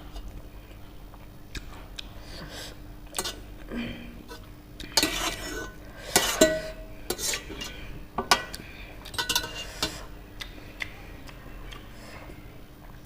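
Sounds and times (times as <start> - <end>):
utensils clinking on dish: 9.1 - 10.0.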